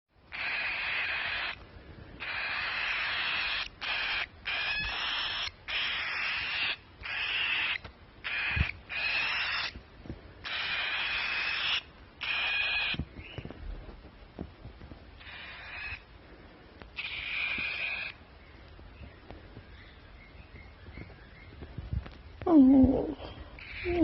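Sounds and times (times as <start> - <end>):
cockatiel chick begging calls: 0.3 - 1.6, 2.2 - 9.8, 10.4 - 13.4, 15.2 - 16.1, 17.0 - 18.2, 23.5 - 24.0.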